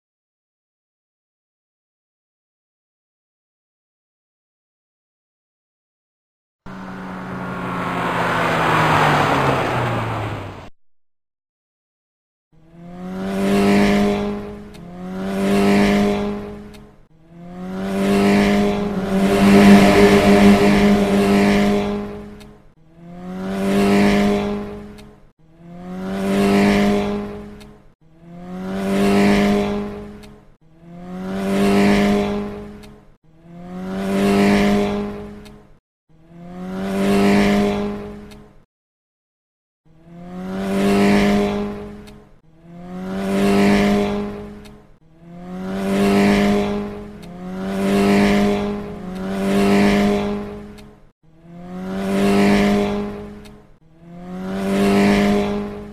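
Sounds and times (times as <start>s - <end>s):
car engine hum passing: 6.7s - 10.7s, 17.3s - 22.4s.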